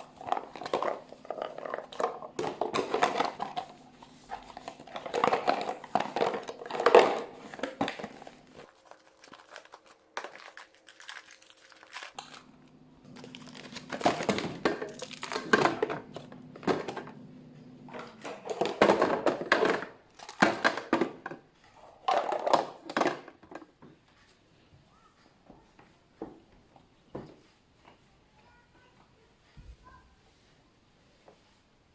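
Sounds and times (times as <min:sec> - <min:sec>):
plastic bags crinkling: 0:00.0 - 0:20.9
low steady hum: 0:12.2 - 0:19.4.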